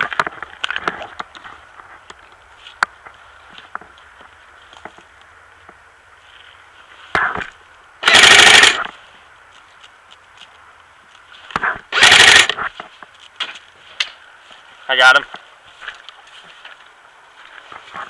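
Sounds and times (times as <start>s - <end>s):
airsoft gun full-auto bursts: 8.0s - 8.8s, 11.9s - 12.6s.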